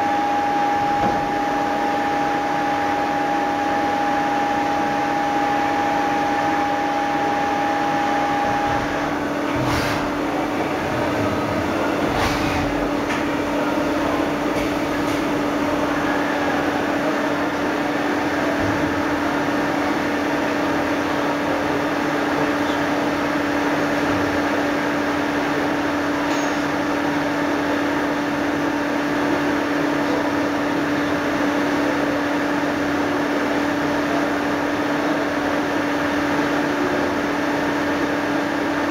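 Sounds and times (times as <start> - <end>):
high machine whine: 0.0 - 38.9.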